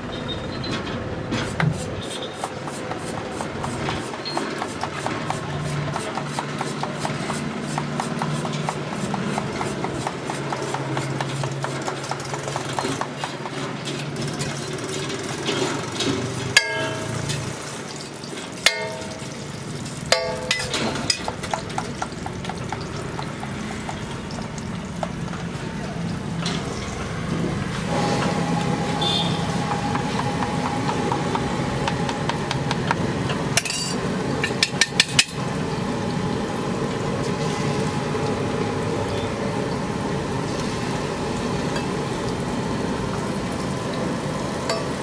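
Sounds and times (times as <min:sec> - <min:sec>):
metal utensils clinking: 0:14.0 - 0:21.8, 0:33.6 - 0:35.4
ringing metal clangs: 0:16.6 - 0:17.4, 0:18.7 - 0:19.3, 0:20.2 - 0:21.3.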